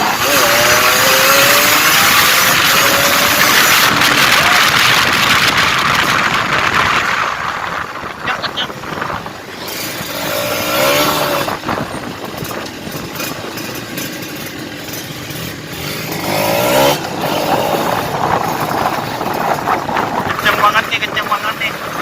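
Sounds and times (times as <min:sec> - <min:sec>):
motorcycle engine accelerating: 0:00.0 - 0:22.0
wind buffeting microphone: 0:00.4 - 0:14.8, 0:15.7 - 0:22.0.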